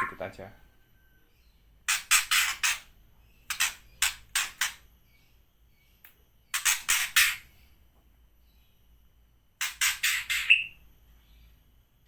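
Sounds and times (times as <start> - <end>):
bird rasping barking calls: 0.0 - 0.3, 9.8 - 10.8.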